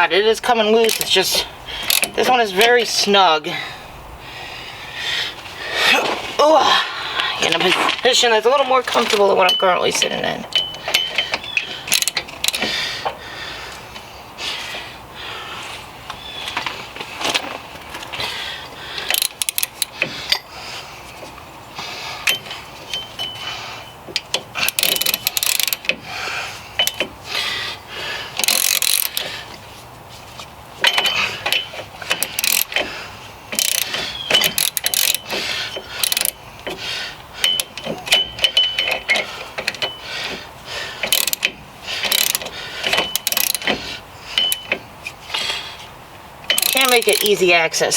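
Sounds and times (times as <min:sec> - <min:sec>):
ratchet wrench clicking: 0:00.8 - 0:02.9, 0:10.5 - 0:12.7, 0:19.0 - 0:20.4, 0:24.1 - 0:26.0, 0:26.8 - 0:27.2, 0:28.4 - 0:29.3, 0:30.8 - 0:32.9, 0:33.5 - 0:36.8, 0:37.4 - 0:40.4, 0:41.0 - 0:45.5, 0:46.5 - 0:47.4.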